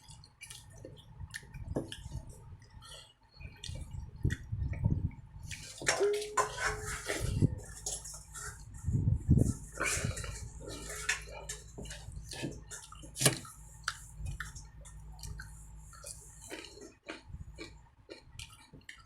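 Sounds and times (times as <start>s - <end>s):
person chewing and smacking: 0.0s - 5.8s, 9.7s - 19.0s
steady low hum: 0.0s - 18.6s.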